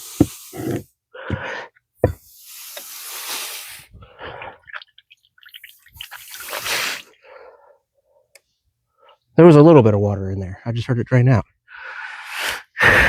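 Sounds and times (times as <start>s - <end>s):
water trickling and dripping: 4.2s - 7.1s.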